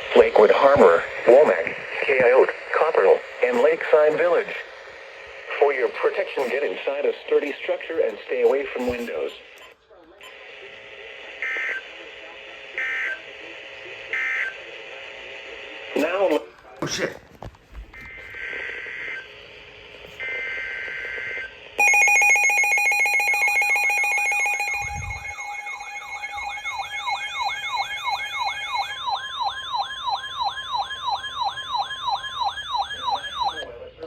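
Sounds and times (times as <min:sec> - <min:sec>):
loud steady alert tone: 0:21.8 - 0:33.6
wailing siren-like tone: 0:21.8 - 0:33.7.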